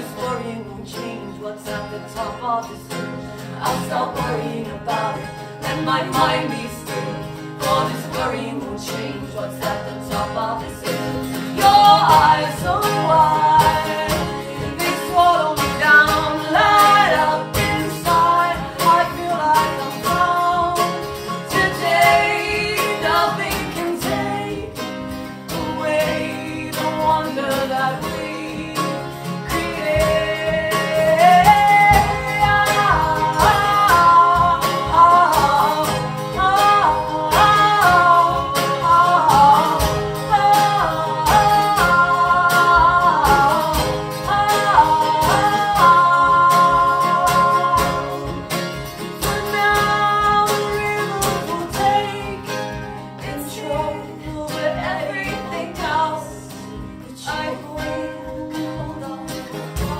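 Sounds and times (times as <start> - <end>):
guitar accompaniment: 0.0 - 59.9
person singing: 0.0 - 59.9.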